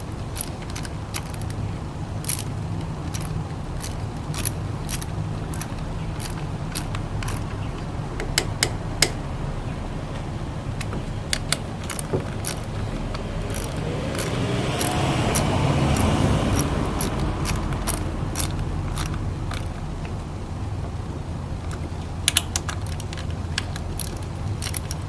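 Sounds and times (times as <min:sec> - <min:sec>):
car engine running: 0:00.0 - 0:25.0
sharp clicks: 0:02.2 - 0:09.2, 0:10.8 - 0:20.2, 0:21.6 - 0:25.0
engine revving: 0:02.2 - 0:22.2.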